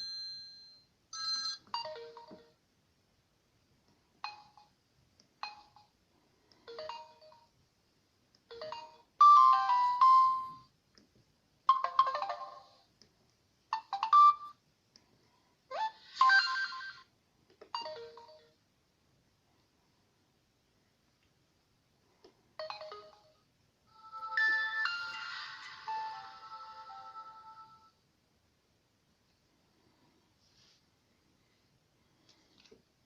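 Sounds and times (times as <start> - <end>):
electronic ringtone jingles: 13.8 - 14.6.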